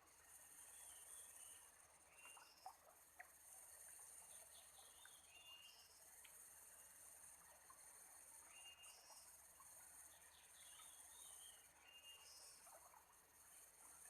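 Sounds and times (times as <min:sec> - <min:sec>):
forest insects chirring: 0:00.0 - 0:14.0.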